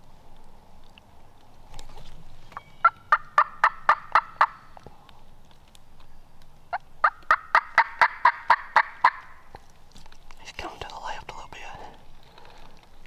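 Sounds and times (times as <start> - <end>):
turkey yelping: 2.5 - 4.8, 6.7 - 9.6.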